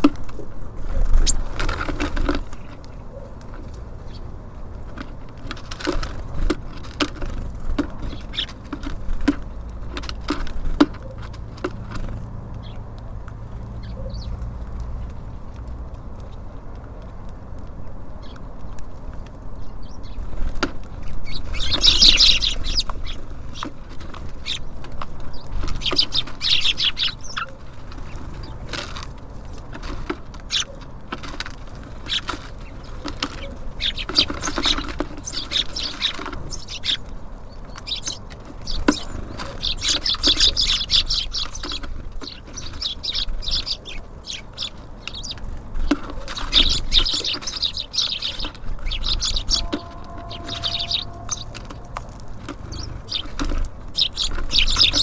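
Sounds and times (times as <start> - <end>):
small songbirds chirping: 0.0 - 55.0
steady low rumble: 46.9 - 54.8.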